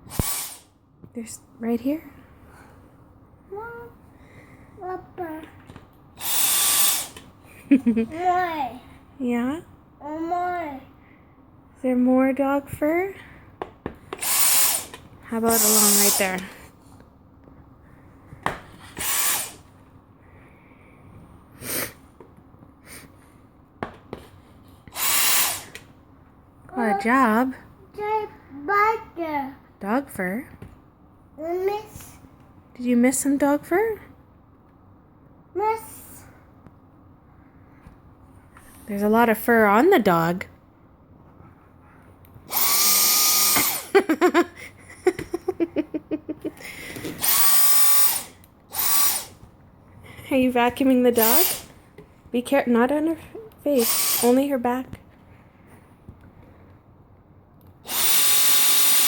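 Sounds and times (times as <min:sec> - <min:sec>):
vacuum cleaner motor whining: 0:42.5 - 0:44.0.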